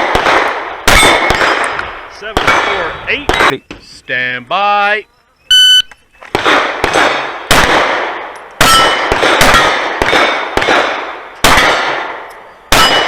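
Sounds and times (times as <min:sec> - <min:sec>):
pistol shots: 0:00.0 - 0:03.6, 0:06.3 - 0:13.0.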